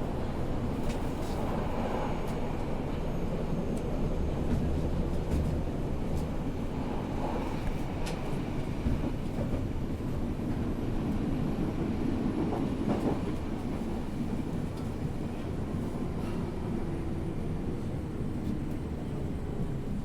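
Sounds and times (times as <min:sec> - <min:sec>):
underground train rumbling: 0:00.0 - 0:20.0.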